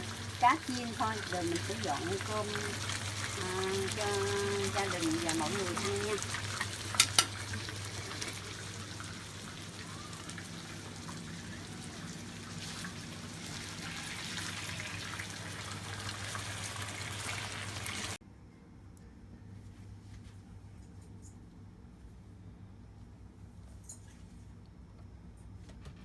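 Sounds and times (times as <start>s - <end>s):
fish frying in hot oil: 0.0s - 18.2s.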